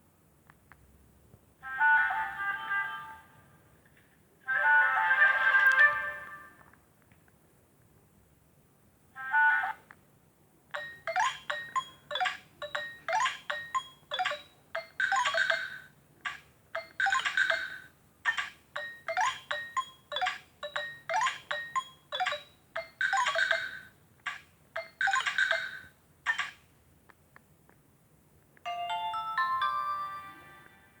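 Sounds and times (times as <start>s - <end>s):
phone ringtone melody: 10.8s - 15.9s, 16.8s - 23.9s, 24.8s - 25.9s, 28.7s - 31.0s.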